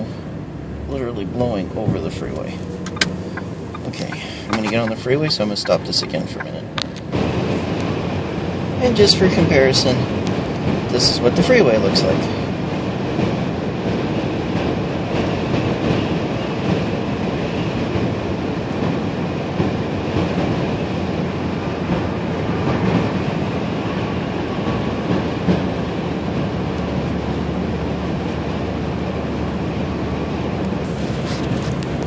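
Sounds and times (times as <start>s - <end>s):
tyre and road rumble: 0.0s - 12.4s, 24.3s - 32.0s.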